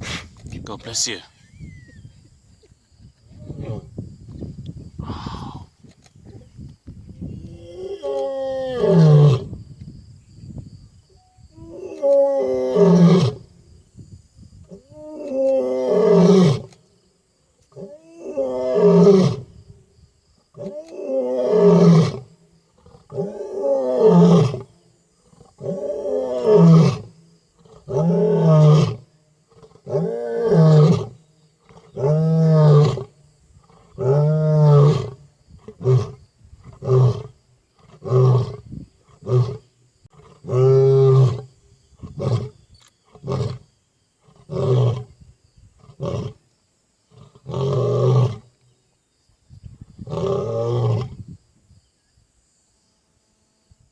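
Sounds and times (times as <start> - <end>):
lion roaring: 50.0 - 51.2.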